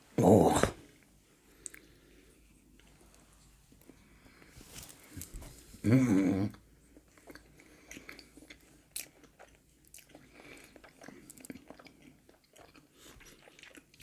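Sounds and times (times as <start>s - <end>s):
chewing pastry: 2.6s - 14.0s.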